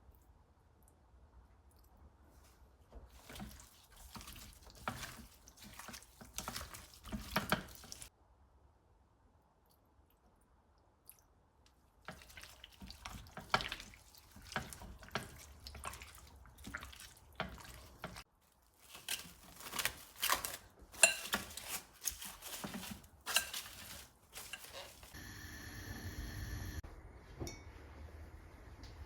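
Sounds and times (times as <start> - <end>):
water dripping and splashing: 1.7 - 8.1, 11.0 - 25.2.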